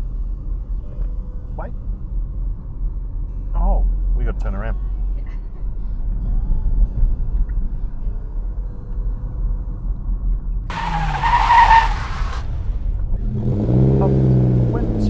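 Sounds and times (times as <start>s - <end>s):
loud hissing burst with squeal: 10.7s - 12.4s
car engine and road rumble: 10.7s - 15.0s.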